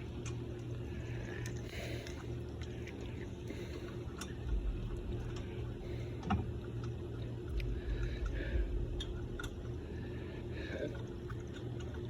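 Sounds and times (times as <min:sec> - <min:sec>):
steady low hum: 0:00.0 - 0:12.0
deeper rumble: 0:03.5 - 0:12.0.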